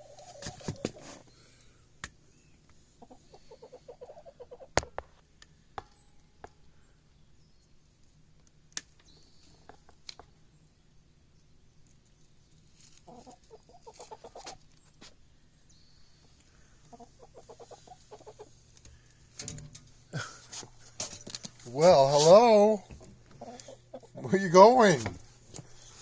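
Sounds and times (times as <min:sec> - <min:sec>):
chicken clucking: 0:00.0 - 0:01.3, 0:03.0 - 0:04.9, 0:13.0 - 0:14.8, 0:16.8 - 0:18.7, 0:23.3 - 0:24.4.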